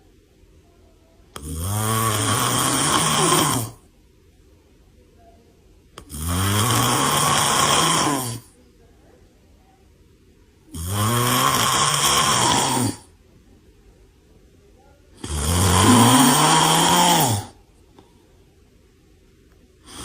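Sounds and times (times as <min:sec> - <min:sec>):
man snoring: 0:01.4 - 0:03.8, 0:06.0 - 0:08.5, 0:10.7 - 0:13.1, 0:15.2 - 0:17.6
quiet breathing: 0:15.2 - 0:18.6.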